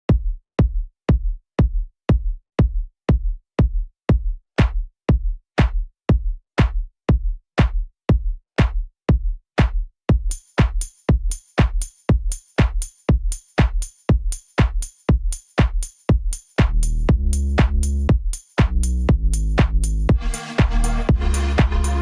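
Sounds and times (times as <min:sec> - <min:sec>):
deep kick drum: 0:00.1 - 0:22.0
electronic dance music: 0:20.1 - 0:22.0.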